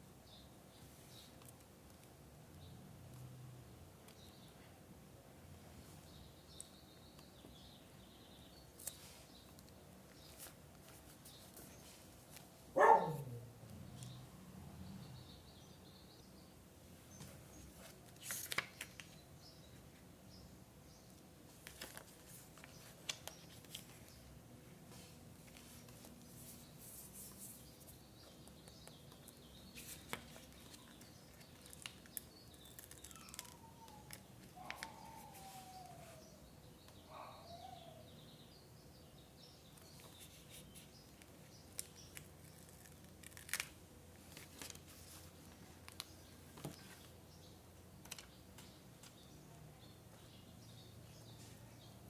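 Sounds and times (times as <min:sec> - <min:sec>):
paper rustling: 0:17.2 - 0:19.2, 0:21.5 - 0:24.3, 0:29.2 - 0:36.1, 0:39.9 - 0:47.1.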